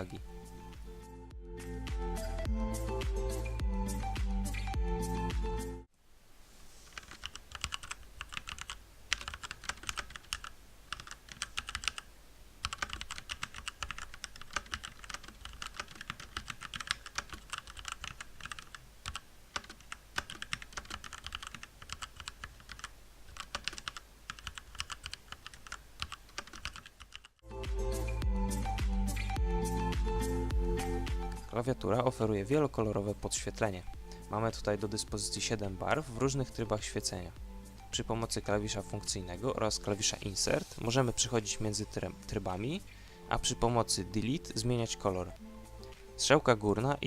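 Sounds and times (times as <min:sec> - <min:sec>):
mechanical keyboard clacking: 0:07.0 - 0:12.0, 0:12.6 - 0:27.3.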